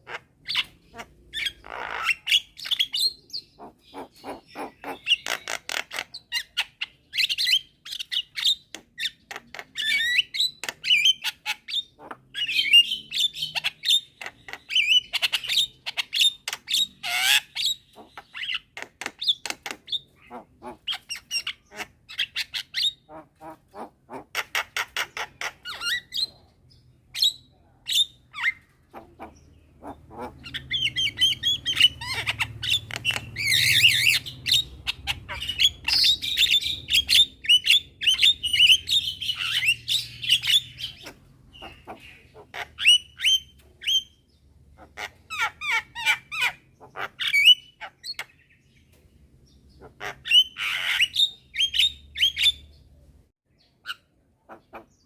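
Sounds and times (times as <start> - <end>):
mynas chirping and squawking: 0.0 - 48.6, 49.5 - 52.9, 53.6 - 55.0.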